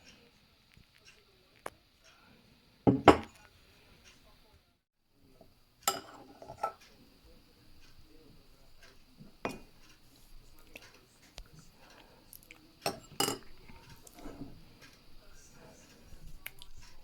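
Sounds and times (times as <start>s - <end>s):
dishware clinking and knocking: 2.9s - 3.4s, 5.9s - 6.8s, 9.4s - 9.8s, 12.8s - 13.5s.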